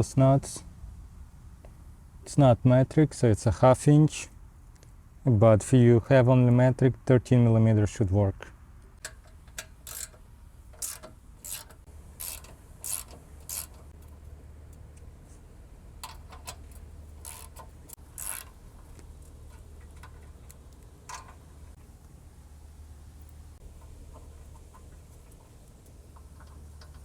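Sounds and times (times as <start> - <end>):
ratchet wrench clicking: 9.0 - 14.0, 16.0 - 18.6.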